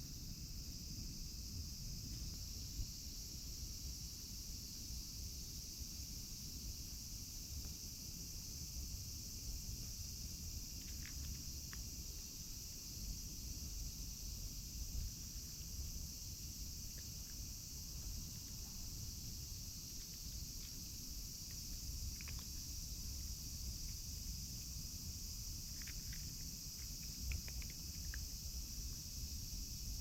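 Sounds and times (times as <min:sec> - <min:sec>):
crickets chirping: 0:00.0 - 0:30.0
small sharp clicks: 0:21.5 - 0:22.8, 0:25.7 - 0:28.3.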